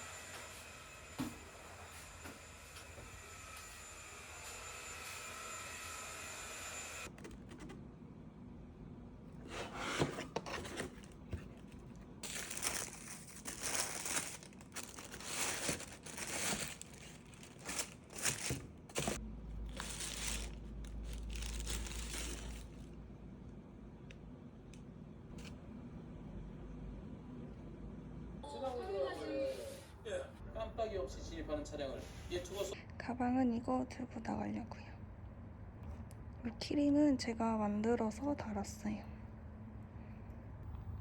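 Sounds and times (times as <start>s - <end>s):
packaging crinkling and tearing: 10.9s - 22.9s.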